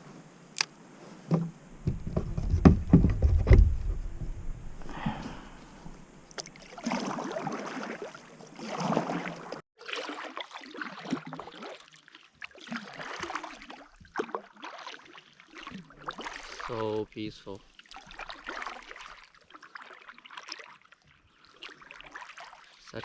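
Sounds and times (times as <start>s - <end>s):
paddle strokes swishing through water: 0.9s - 23.0s
small splashes and drips: 4.8s - 23.0s.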